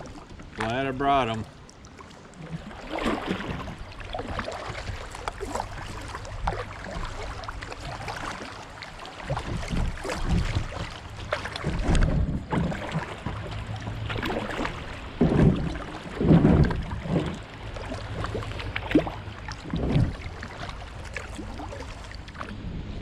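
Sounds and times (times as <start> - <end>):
paddle splashing in water: 0.0 - 22.7.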